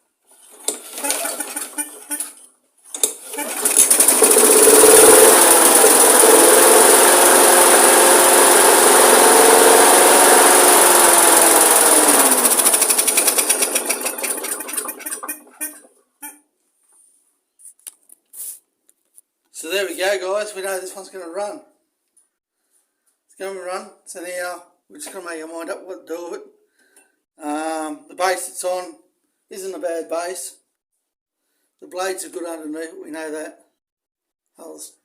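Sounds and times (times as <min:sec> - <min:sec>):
recoil starter pull: 0:00.4 - 0:15.9
lawn mower engine running: 0:00.6 - 0:02.3, 0:02.9 - 0:15.9.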